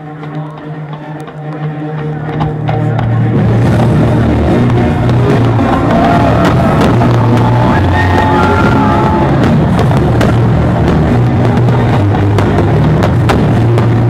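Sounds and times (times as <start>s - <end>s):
bass line: 2.6s - 14.0s
drum hits: 3.4s - 14.0s
held melody line: 3.8s - 14.0s.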